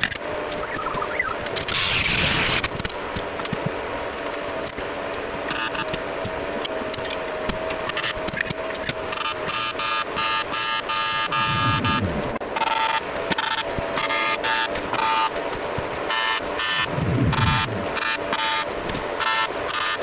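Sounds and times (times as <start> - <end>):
power tool humming: 4.7 - 15.4, 16.1 - 20.0.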